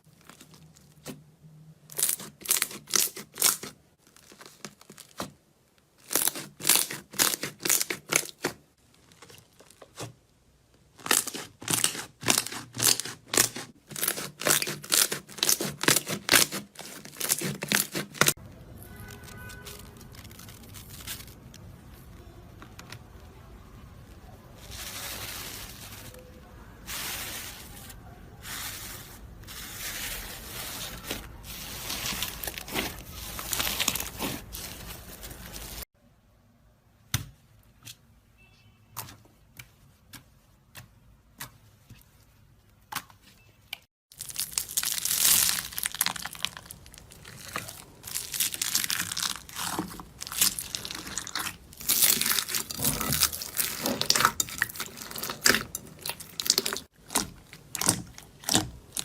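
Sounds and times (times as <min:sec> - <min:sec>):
slime crackling and popping: 0:01.9 - 0:10.1, 0:10.9 - 0:22.1, 0:44.1 - 0:59.0.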